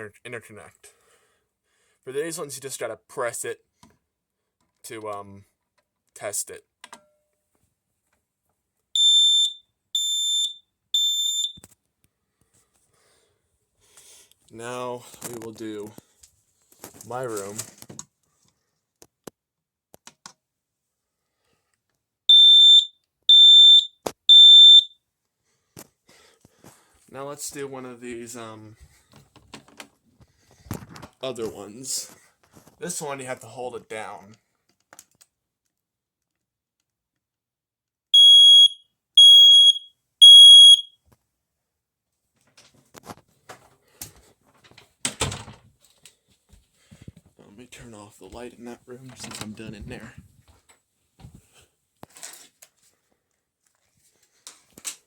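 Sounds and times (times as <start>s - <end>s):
smoke alarm beeps: 9.0s - 11.6s, 22.3s - 25.0s, 38.2s - 41.0s.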